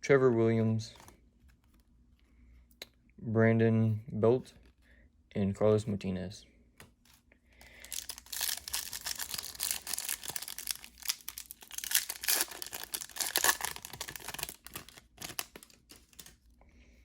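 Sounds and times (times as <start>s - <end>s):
plastic wrapper crinkling and tearing: 7.6s - 16.4s.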